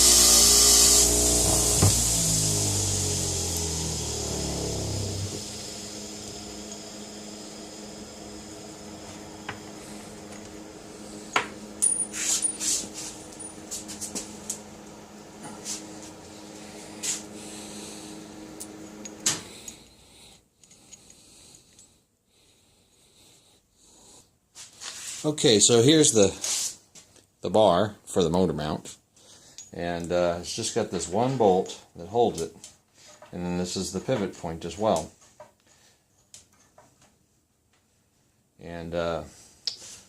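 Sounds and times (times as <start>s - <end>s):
machine hum: 0.0s - 20.9s
metal parts clinking: 11.8s - 13.6s.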